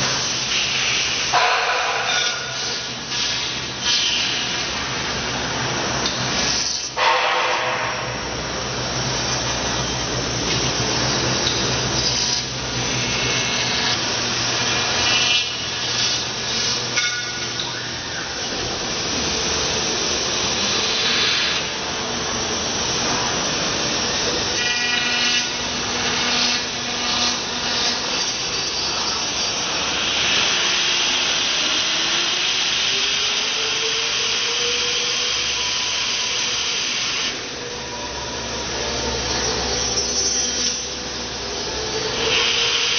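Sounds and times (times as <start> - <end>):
machine cutting: 22.8 - 37.9
rising machine tone: 37.4 - 42.9.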